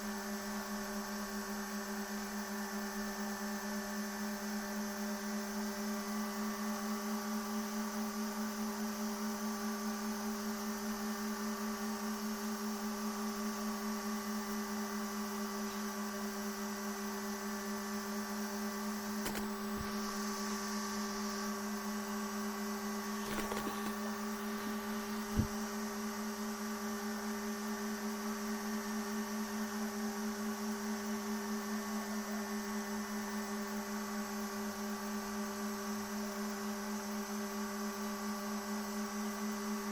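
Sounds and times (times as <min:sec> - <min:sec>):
printer electrical hum: 0:00.0 - 0:39.9
sharp click: 0:19.2 - 0:20.2, 0:23.2 - 0:25.6.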